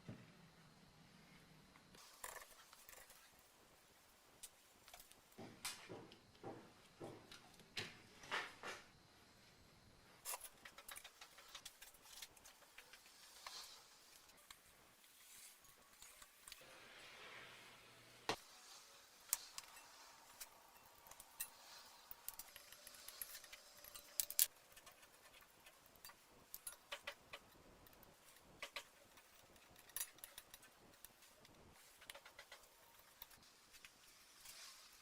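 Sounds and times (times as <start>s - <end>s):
small metal parts clicking and clinking: 10.2s - 14.6s, 19.2s - 33.4s.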